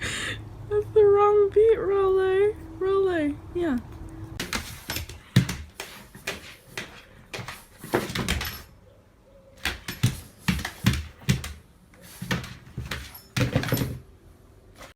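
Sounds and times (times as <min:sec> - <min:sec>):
knocks and thumps: 0:04.4 - 0:08.7, 0:09.6 - 0:11.6, 0:12.2 - 0:14.1.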